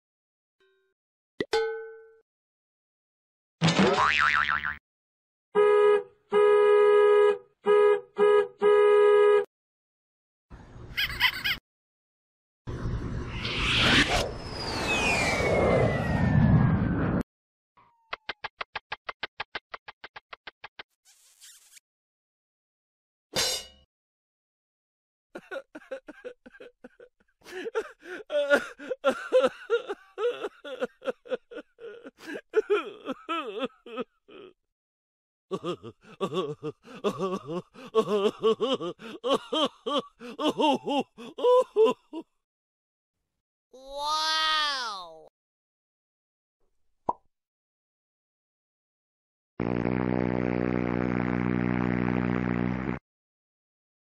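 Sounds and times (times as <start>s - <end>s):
comedy horn honks: 5.6s - 9.5s, 49.6s - 53.0s
person laughing: 11.0s - 11.6s, 25.4s - 34.6s, 35.5s - 42.4s
warbling noisy sound effect: 12.7s - 17.2s.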